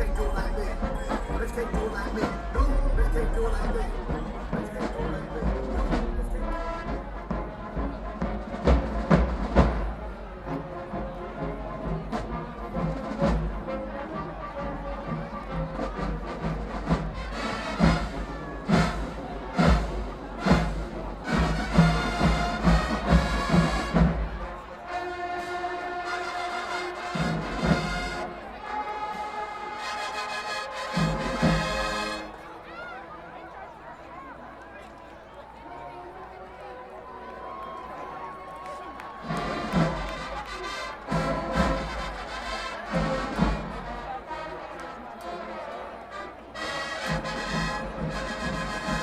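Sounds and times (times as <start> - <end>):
bass drums pounding: 0.0 - 7.5
marching band playing: 0.0 - 33.8, 35.6 - 49.0.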